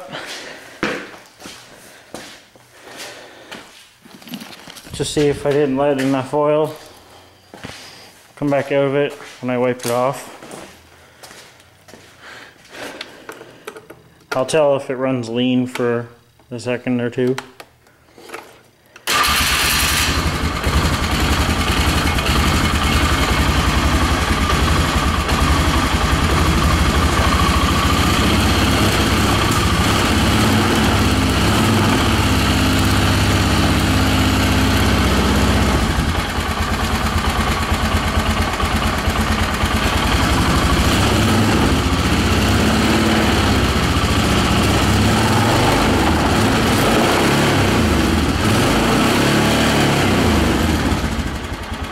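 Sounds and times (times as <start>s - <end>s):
engine starting and idling: 19.0s - 51.9s.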